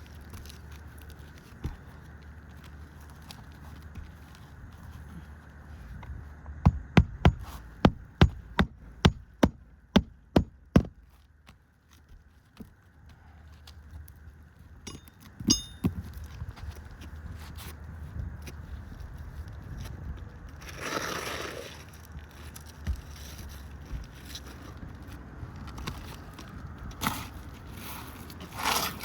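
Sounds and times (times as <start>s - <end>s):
hammer striking nails: 6.7s - 11.0s.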